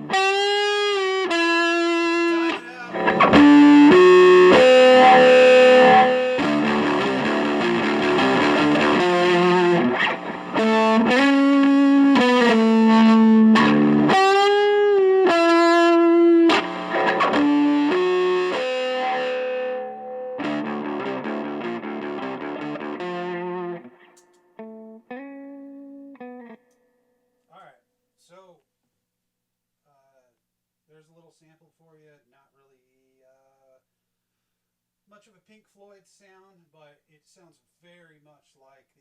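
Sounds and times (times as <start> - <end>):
looped rhythm part: 0.0 - 19.3
distorted electric guitar lead: 0.0 - 26.7.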